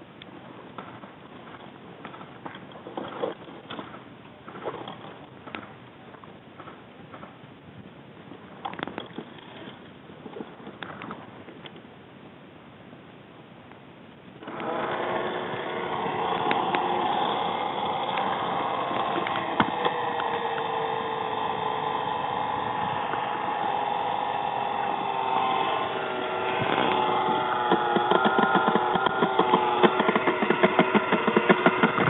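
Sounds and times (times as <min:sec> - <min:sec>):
engine running: 0:14.4 - 0:32.0
fast regular ticking: 0:14.4 - 0:32.0.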